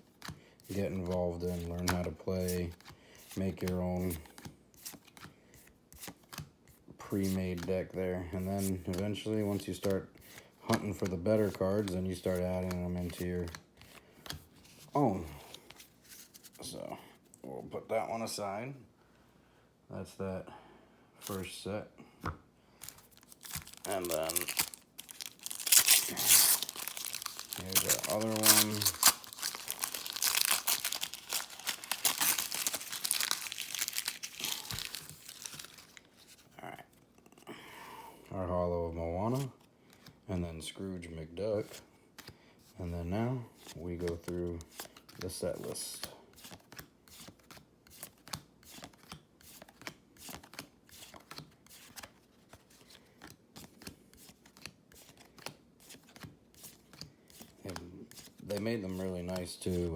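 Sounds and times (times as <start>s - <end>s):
wrapper crinkling and tearing: 23.0s - 36.0s.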